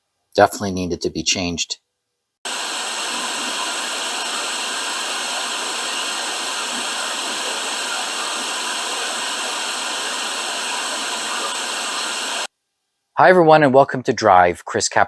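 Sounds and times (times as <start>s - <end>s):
steady rushing hiss: 2.5s - 12.5s.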